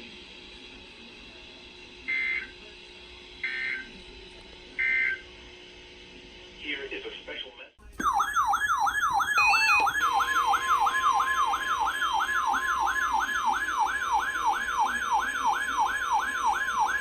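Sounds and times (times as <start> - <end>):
steady warning alarm tone: 2.1 - 2.5, 3.4 - 3.9, 4.8 - 5.2, 8.0 - 17.0
alert siren warbling: 8.0 - 17.0.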